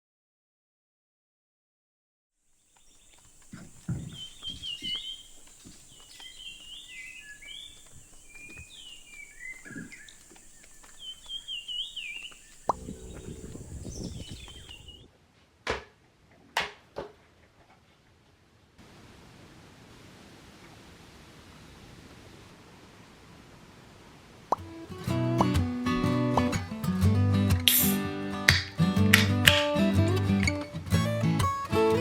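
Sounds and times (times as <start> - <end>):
outdoor background hiss: 2.4 - 32.0
songbird chirping: 2.5 - 15.1
wind rumble on microphone: 3.5 - 15.1.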